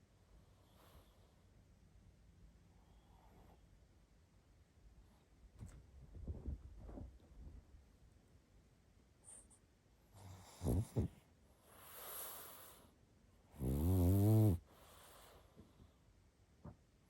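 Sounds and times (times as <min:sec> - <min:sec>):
dog snorting and snoring: 0:10.2 - 0:11.2, 0:13.6 - 0:14.6.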